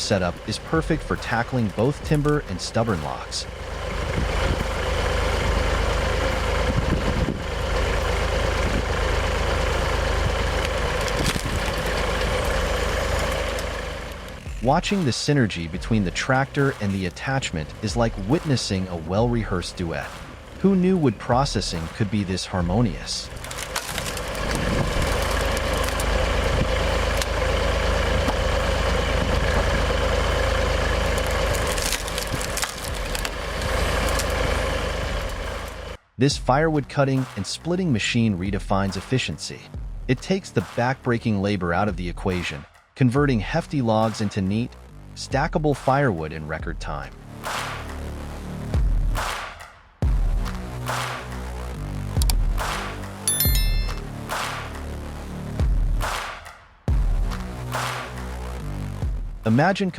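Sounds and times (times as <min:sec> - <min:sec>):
tractor engine running: 0:00.0 - 0:36.0, 0:50.0 - 0:59.8
wood cracking and splintering: 0:09.7 - 0:14.4, 0:23.2 - 0:27.6, 0:28.2 - 0:35.8.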